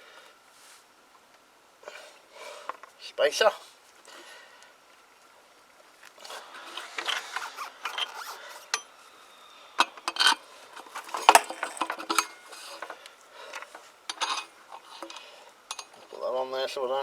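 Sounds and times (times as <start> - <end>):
metal parts clicking and scraping: 6.2 - 9.0, 9.8 - 16.1.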